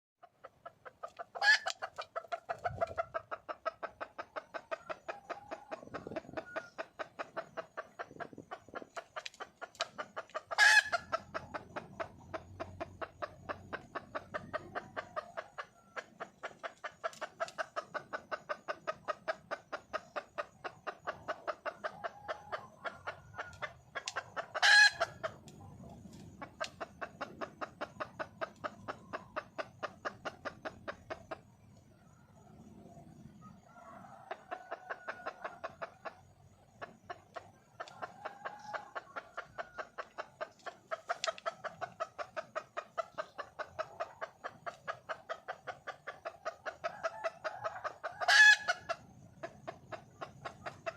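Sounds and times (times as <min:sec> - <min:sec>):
hen clucking: 0:00.2 - 0:50.9.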